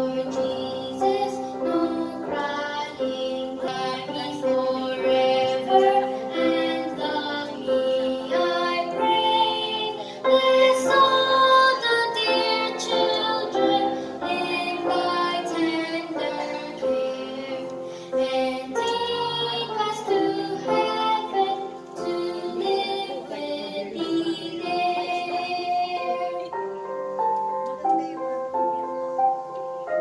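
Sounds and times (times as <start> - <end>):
voices singing a carol: 0.0 - 26.8
instrumental accompaniment: 0.0 - 30.0.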